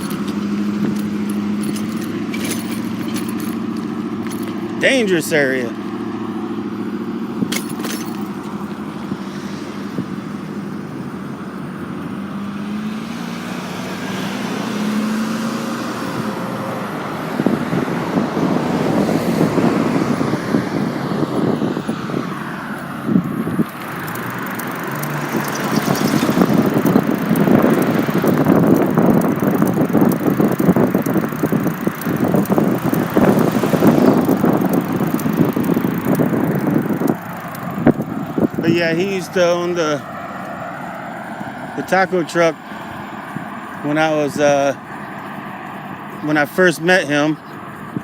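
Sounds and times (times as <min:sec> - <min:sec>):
car traffic passing: 0:00.0 - 0:48.0
wind on microphone: 0:08.3 - 0:11.2, 0:13.0 - 0:43.8.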